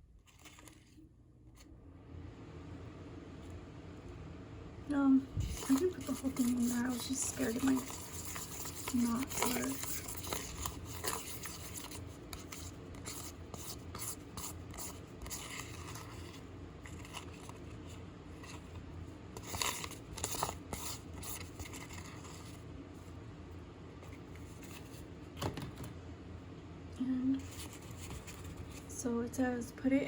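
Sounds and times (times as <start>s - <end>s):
spoon scraping batter in bowl: 5.5s - 16.4s.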